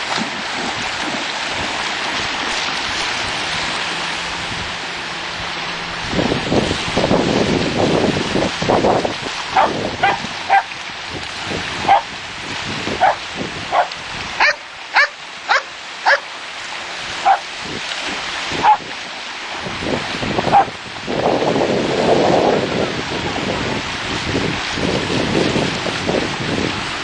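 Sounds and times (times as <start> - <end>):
surf and wind hiss: 0.0 - 27.0
dog barking: 9.6 - 10.7, 11.9 - 12.1, 13.0 - 16.3, 17.2 - 17.4, 18.6 - 18.8, 20.5 - 20.7.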